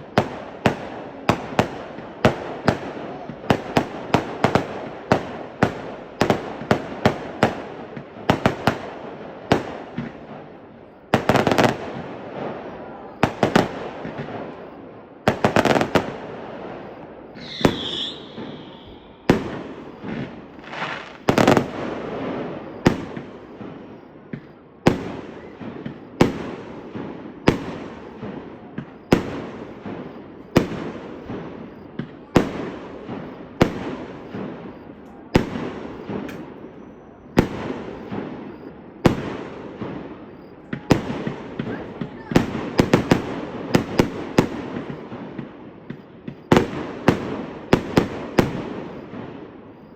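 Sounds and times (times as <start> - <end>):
fireworks shells bursting: 17.3 - 23.8, 35.9 - 36.8.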